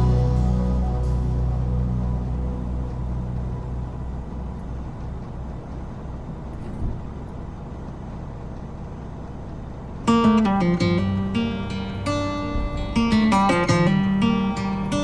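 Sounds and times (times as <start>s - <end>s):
song: 0.0s - 5.3s
truck engine and road rumble: 0.0s - 15.0s.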